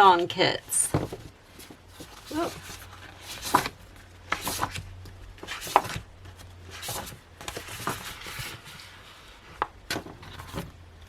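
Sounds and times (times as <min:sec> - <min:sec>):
paper and plastic rustling: 0:00.8 - 0:10.8.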